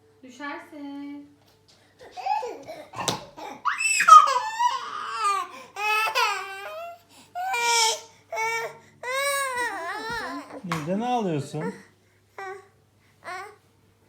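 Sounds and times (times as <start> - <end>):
toddler crying and whining: 2.0 - 10.8, 11.5 - 13.7.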